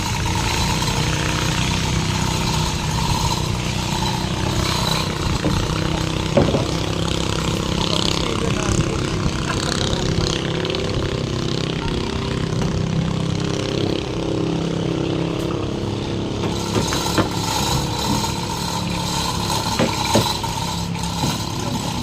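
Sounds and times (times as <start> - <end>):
engine running steadily: 0.0 - 22.0
sharp knocks: 4.7 - 7.0, 16.4 - 18.3.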